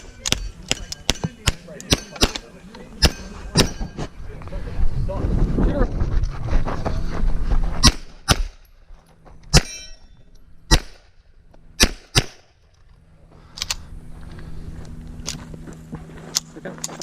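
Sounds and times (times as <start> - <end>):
metallic ring: 0.0 - 4.1, 8.6 - 10.6
pistol shots: 0.2 - 3.8, 7.8 - 8.6, 10.7 - 11.1, 11.8 - 12.5.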